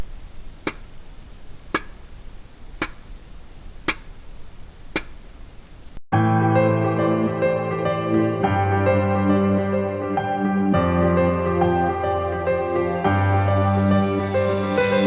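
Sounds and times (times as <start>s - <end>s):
sharp ticks: 0.0s - 5.4s
faint steady hiss: 0.0s - 6.0s
background music: 6.2s - 15.0s.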